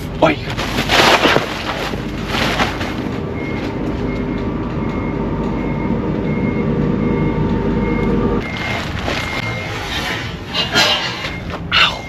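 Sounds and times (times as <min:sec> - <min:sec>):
forklift engine running: 0:00.0 - 0:11.8
reversing alarm beeping: 0:03.1 - 0:12.0.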